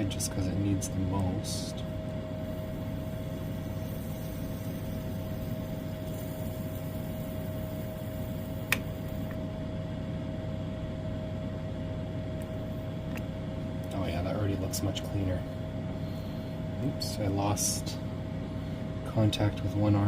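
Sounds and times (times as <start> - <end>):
faint whine: 0.0 - 20.0
steady hum: 0.0 - 20.0
sharp click: 8.7 - 8.9.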